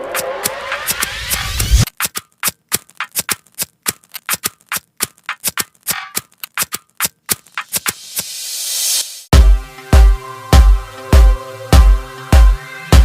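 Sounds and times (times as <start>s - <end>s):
dry percussive clicks: 0.0s - 8.3s
electronic bass-boosted music: 9.3s - 13.0s.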